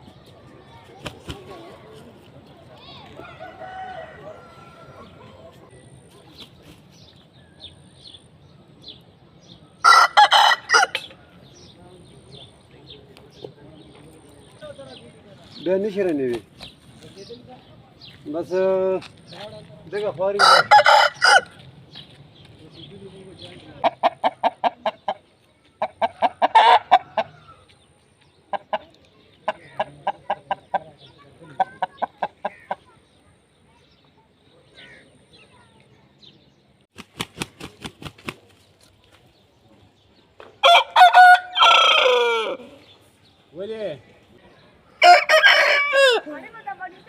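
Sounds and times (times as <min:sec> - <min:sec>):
rooster crowing: 0:03.2 - 0:05.4, 0:20.4 - 0:21.6, 0:40.6 - 0:42.7, 0:45.0 - 0:46.3
rooster clucking: 0:23.8 - 0:27.6, 0:28.5 - 0:30.9, 0:31.6 - 0:32.8.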